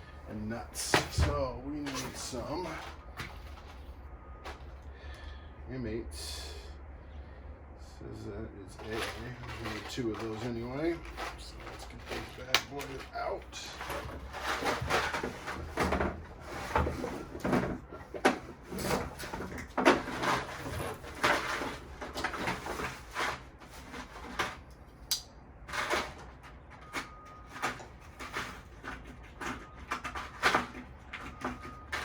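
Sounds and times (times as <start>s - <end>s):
hands rummaging through bolts: 0.0s - 4.9s, 8.7s - 24.9s, 25.6s - 32.0s.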